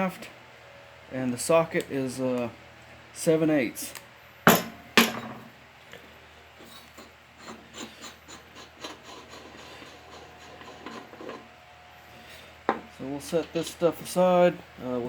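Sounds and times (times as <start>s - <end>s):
sharp metal knocks: 4.5s - 5.4s.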